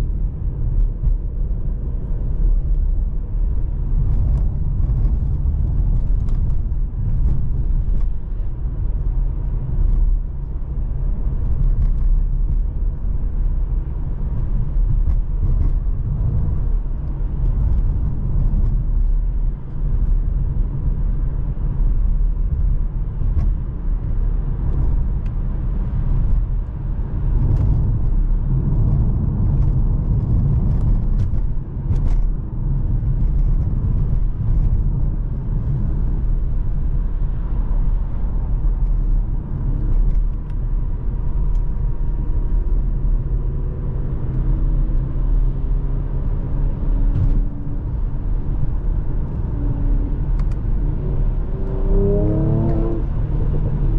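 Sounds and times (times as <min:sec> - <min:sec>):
car engine low rumble: 0:00.0 - 0:53.9.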